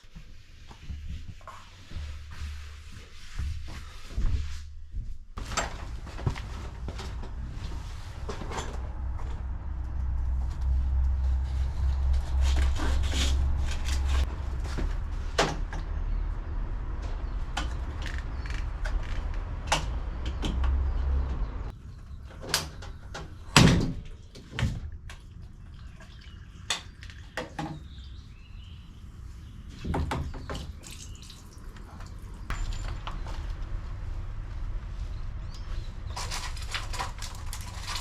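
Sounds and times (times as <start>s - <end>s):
low rumble: 4.3s - 21.7s, 32.5s - 38.0s.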